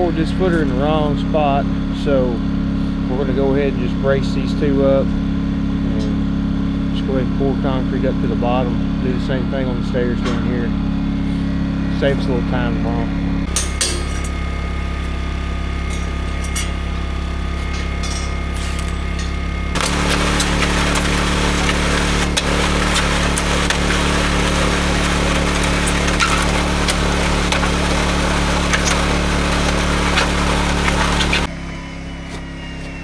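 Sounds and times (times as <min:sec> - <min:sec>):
machine engine running: 0:00.0 - 0:33.0
harsh rushing noise: 0:19.8 - 0:31.5.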